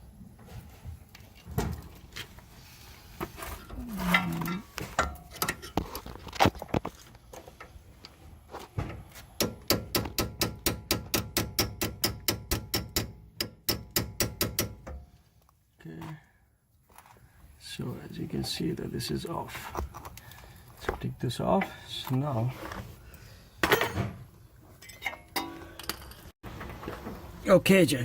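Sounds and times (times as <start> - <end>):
hammer striking metal punch: 9.4 - 15.0.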